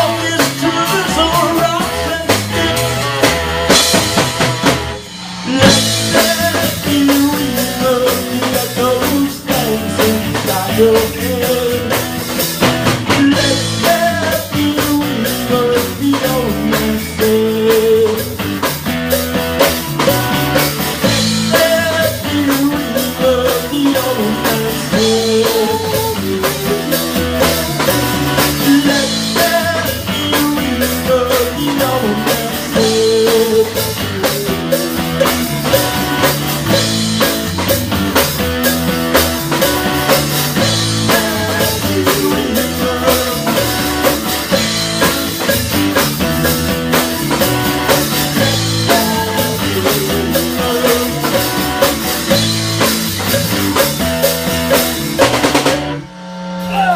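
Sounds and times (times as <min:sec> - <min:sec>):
wavering lead guitar melody: 0:00.0 - 0:56.1
rock band playing live: 0:00.0 - 0:56.9.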